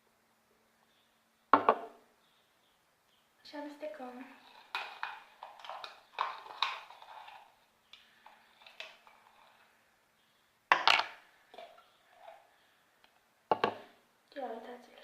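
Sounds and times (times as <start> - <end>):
slime being stirred: 4.1 - 9.8, 11.5 - 12.8.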